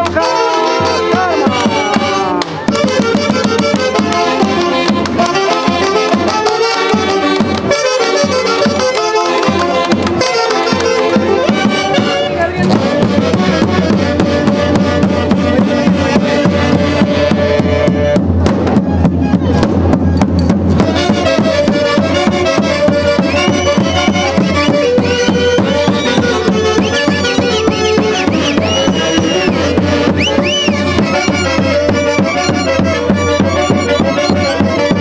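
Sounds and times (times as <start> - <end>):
band playing lively tune: 0.0 - 35.0.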